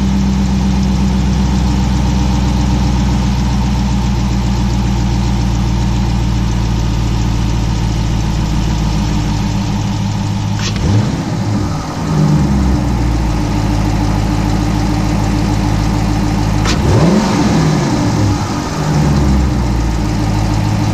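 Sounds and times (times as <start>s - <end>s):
car engine idling: 0.0s - 20.9s
engine revving: 7.8s - 20.9s.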